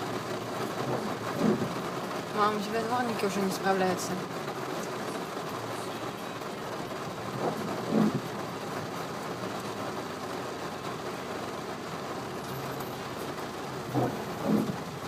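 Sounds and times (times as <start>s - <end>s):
windscreen wipers thumping: 0.0s - 3.2s, 6.9s - 15.0s
heavy rain on car: 0.0s - 15.0s
road noise: 0.0s - 15.0s.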